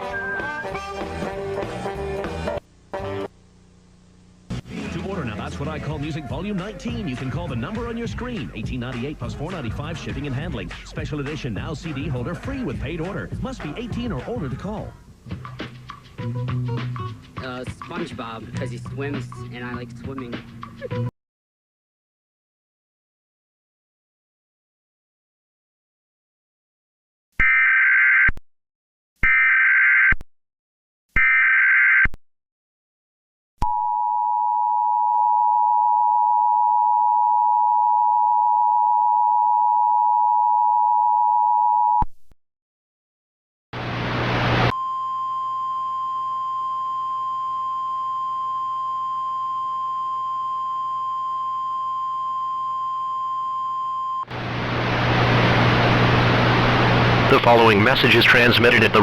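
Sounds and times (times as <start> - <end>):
hiss and hum: 43.8 - 44.7, 54.3 - 59.0.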